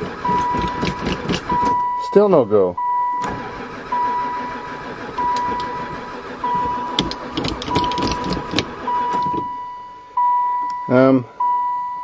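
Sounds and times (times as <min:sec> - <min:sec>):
starter cranking engine: 0:00.0 - 0:01.9, 0:03.1 - 0:09.5
high warning chime: 0:08.9 - 0:12.0.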